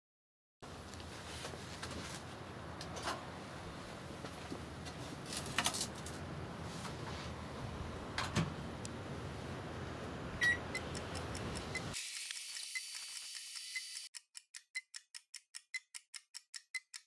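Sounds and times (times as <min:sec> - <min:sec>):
microwave oven humming: 0:01.8 - 0:12.0.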